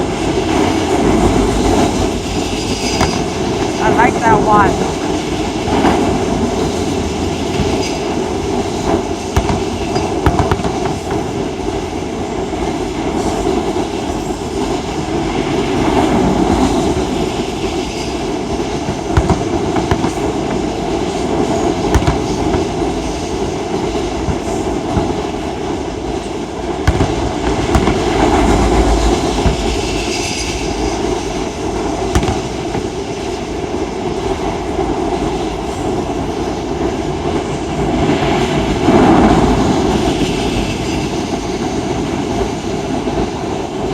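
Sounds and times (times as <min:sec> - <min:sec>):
train wheel clatter: 0:00.0 - 0:03.8, 0:04.8 - 0:43.9
freight train rumbling: 0:00.0 - 0:43.9
fireworks popping: 0:02.8 - 0:04.8, 0:07.4 - 0:11.8, 0:18.2 - 0:35.3.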